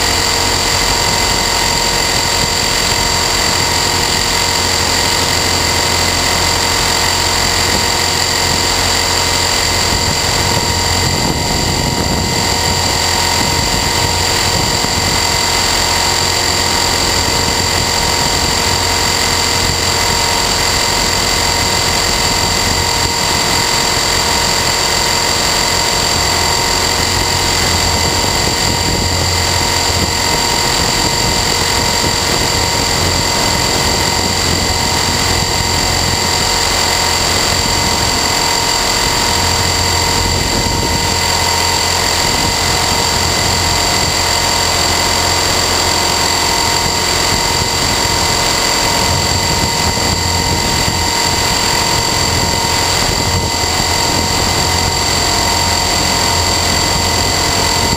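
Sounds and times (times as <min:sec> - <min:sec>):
helicopter rotor noise: 0:00.0 - 0:57.9
high-pitched motor whine: 0:00.0 - 0:57.9.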